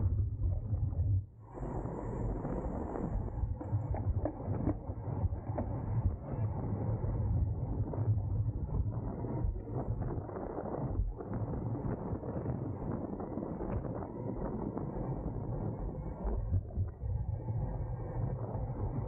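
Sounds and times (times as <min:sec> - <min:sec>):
wind rushing over microphone: 0:00.0 - 0:19.0.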